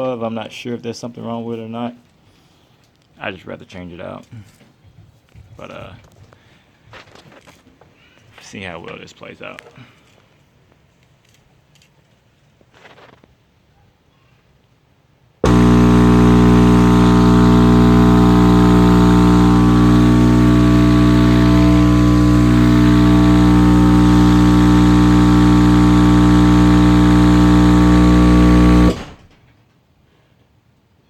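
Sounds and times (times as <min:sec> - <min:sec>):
subwoofer mains hum: 0:15.4 - 0:29.4.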